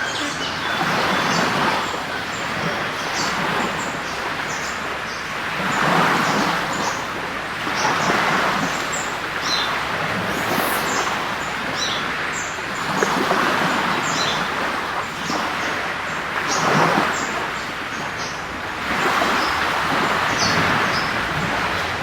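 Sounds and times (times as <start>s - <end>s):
small birds chirping: 0.0s - 5.3s, 7.7s - 14.6s
waves washing onto beach: 0.0s - 22.0s.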